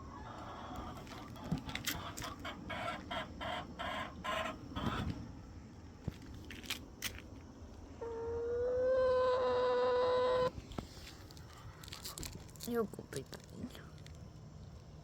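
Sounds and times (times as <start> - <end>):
chicken clucking: 0.0 - 5.1, 8.0 - 10.5.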